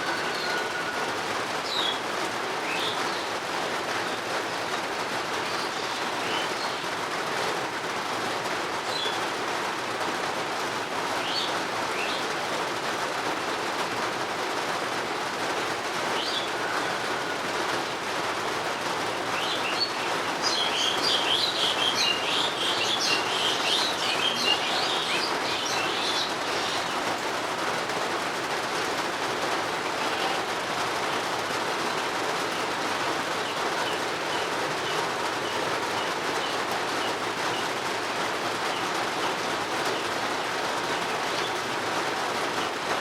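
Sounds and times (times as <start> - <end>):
steady rain hiss: 0.0 - 43.0
birds chirping: 16.2 - 18.0, 18.8 - 27.5, 29.8 - 41.6.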